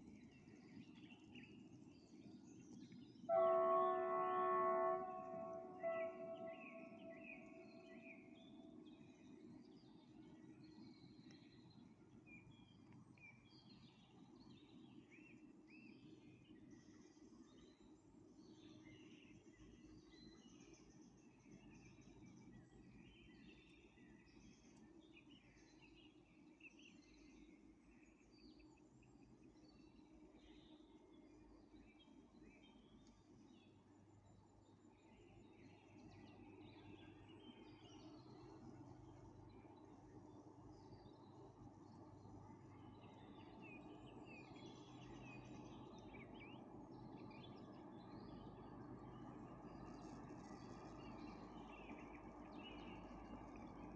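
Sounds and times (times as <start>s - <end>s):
low steady outdoor hum: 0.0s - 53.9s
birds chirping and trilling: 3.9s - 8.5s.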